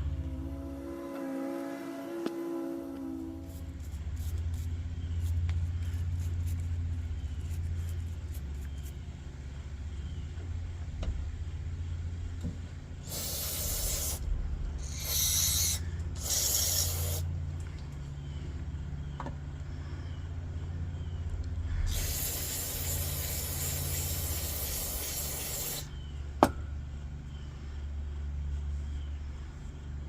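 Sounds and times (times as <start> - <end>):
steady low hum: 0.0 - 30.0
lantern generator hissing: 13.0 - 17.3, 21.7 - 26.0.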